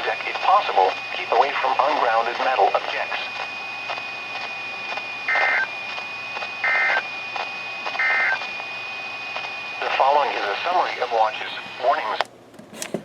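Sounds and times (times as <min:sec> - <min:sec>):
digital data tone bursts: 0:00.0 - 0:10.3.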